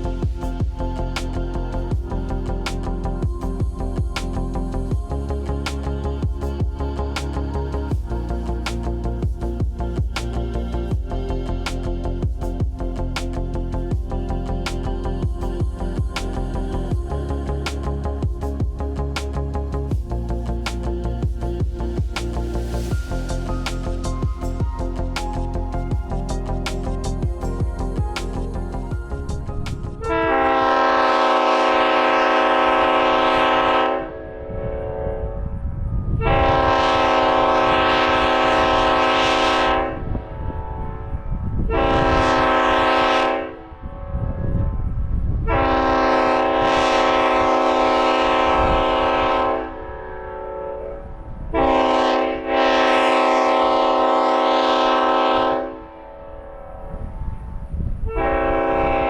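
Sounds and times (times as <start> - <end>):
low rumble: 0.0 - 31.1, 34.1 - 51.7
locomotive air horn blasts: 30.2 - 34.3, 36.2 - 40.0, 41.7 - 43.6, 45.5 - 50.8, 51.6 - 56.0, 58.1 - 59.0.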